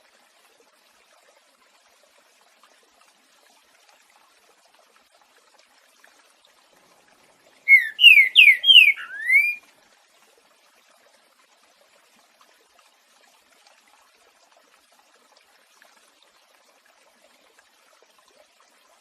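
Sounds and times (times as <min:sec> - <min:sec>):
bird whistling song: 0:07.7 - 0:09.6.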